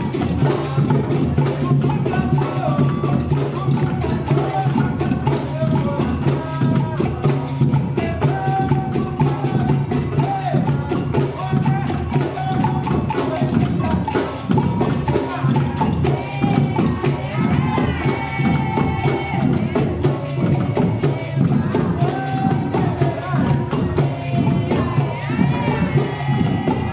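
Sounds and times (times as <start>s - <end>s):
clacking hand percussion: 0.0s - 26.9s
drums playing dense rhythm: 0.0s - 26.9s
voices: 0.0s - 26.9s.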